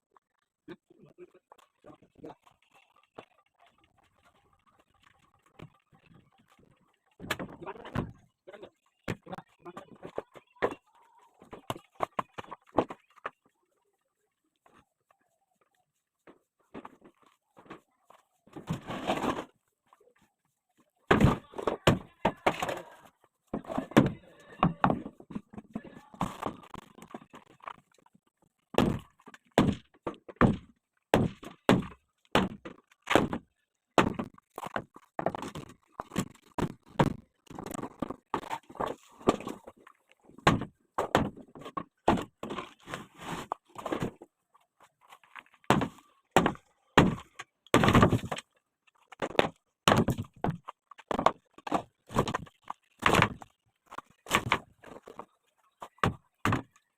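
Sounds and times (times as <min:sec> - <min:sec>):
wooden knocks and cracks: 0:23.5 - 0:43.0, 0:45.0 - 0:56.9.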